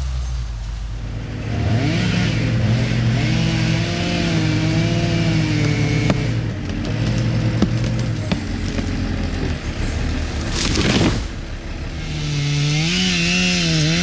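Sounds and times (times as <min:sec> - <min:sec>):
engine revving: 0:00.0 - 0:14.0.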